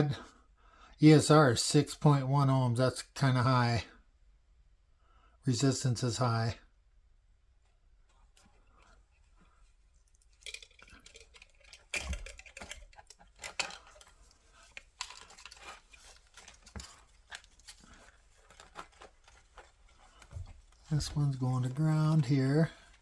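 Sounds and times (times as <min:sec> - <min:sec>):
small clicks and scrapes: 0:08.1 - 0:21.0.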